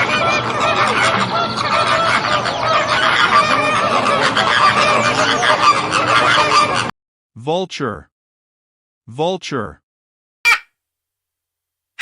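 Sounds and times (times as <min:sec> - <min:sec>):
flock of flamingos calling: 0:00.0 - 0:06.9.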